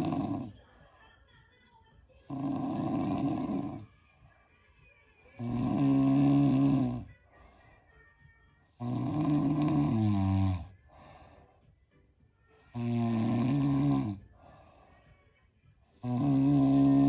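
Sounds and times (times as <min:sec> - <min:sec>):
man snoring heavily: 0:00.0 - 0:00.6, 0:02.3 - 0:03.9, 0:05.4 - 0:07.1, 0:08.8 - 0:10.8, 0:12.7 - 0:14.3, 0:16.0 - 0:17.0
quiet breaths: 0:00.0 - 0:04.6, 0:05.3 - 0:17.0.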